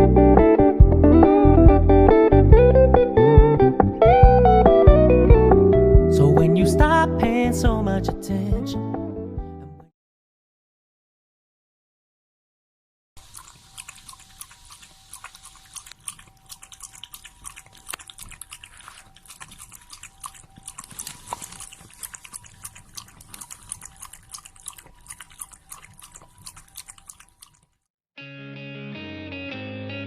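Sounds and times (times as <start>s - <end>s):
dog chewing and licking: 13.2s - 27.9s.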